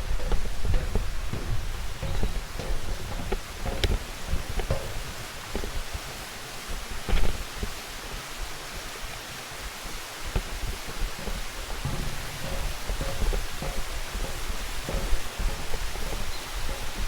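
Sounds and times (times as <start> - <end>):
thumps: 0.0 - 5.8, 10.9 - 17.0
mountain stream rushing: 0.0 - 17.0
wind buffeting microphone: 0.0 - 17.0.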